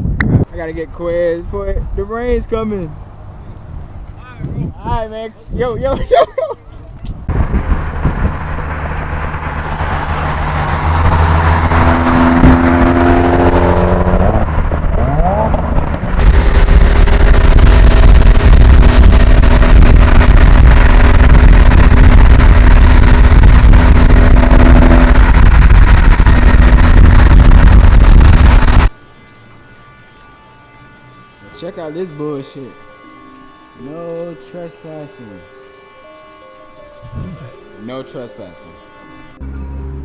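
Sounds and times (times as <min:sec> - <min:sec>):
car engine accelerating: 0:07.2 - 0:28.9, 0:39.4 - 0:40.0
loud rushing noise: 0:07.3 - 0:28.9.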